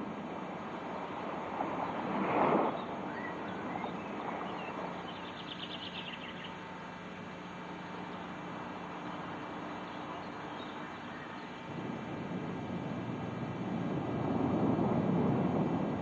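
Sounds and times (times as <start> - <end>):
hiss of wind or sea: 0.0 - 5.0, 10.4 - 16.0
bird chirps: 2.7 - 6.7, 9.0 - 11.6
bird trill: 2.7 - 6.7.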